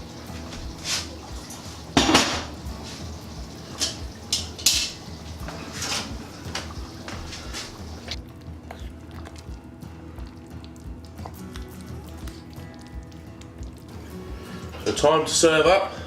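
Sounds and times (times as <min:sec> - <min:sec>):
pot lid clanking: 0:03.8 - 0:05.0.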